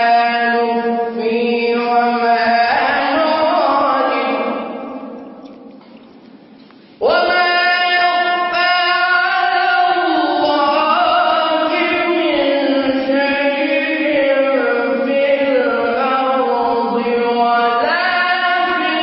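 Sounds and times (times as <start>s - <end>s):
man chanting melodically: 0.0s - 5.4s, 7.0s - 19.0s.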